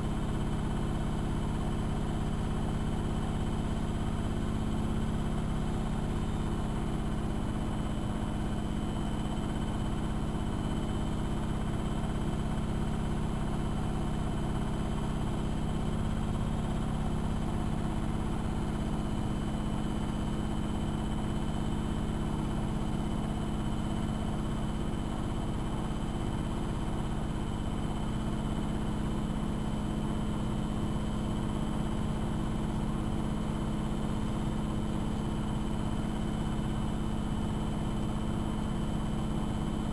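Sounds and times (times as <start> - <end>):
washing machine motor hum: 0.0 - 39.9.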